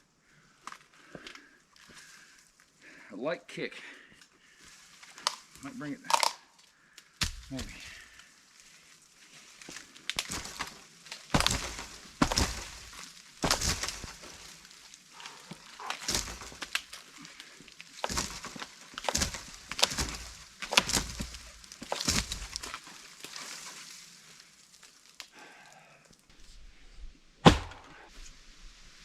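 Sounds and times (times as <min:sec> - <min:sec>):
boot kicking tree trunk: 0:07.2 - 0:07.8, 0:10.2 - 0:14.5, 0:15.8 - 0:17.0, 0:18.0 - 0:22.8, 0:27.4 - 0:28.1.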